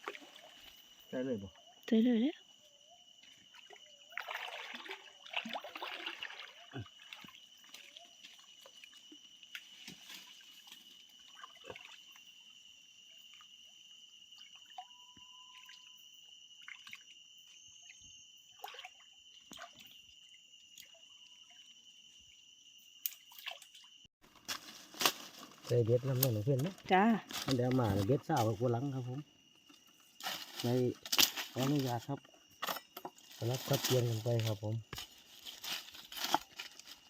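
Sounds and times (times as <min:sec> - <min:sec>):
shallow water splashing: 0:03.3 - 0:08.9.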